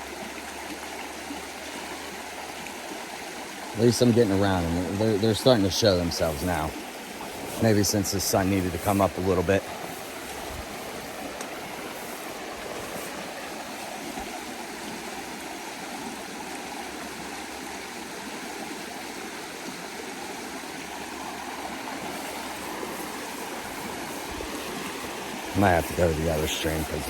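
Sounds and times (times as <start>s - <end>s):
stream water rushing: 0.0s - 27.0s.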